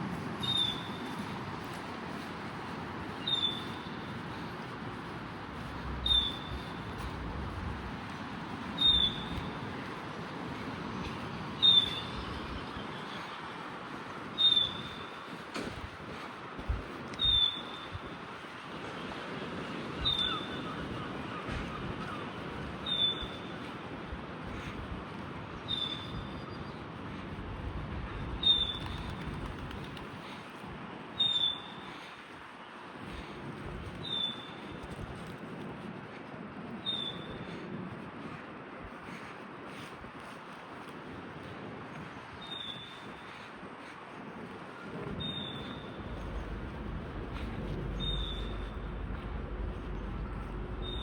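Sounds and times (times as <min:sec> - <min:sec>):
distant traffic hum: 0:00.0 - 0:51.0
bird whistling call: 0:00.4 - 0:00.9, 0:03.2 - 0:03.9, 0:06.0 - 0:06.5, 0:08.8 - 0:09.3, 0:11.6 - 0:12.2, 0:14.4 - 0:14.9, 0:31.2 - 0:31.7, 0:48.0 - 0:48.6.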